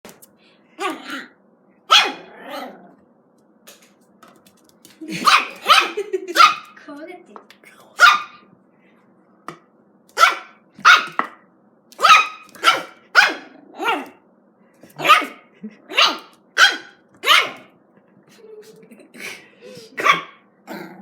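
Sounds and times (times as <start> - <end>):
dog barking: 1.9 - 2.3, 5.1 - 6.8, 8.0 - 8.4, 10.2 - 11.3, 12.0 - 14.2, 15.0 - 17.7, 20.0 - 20.4.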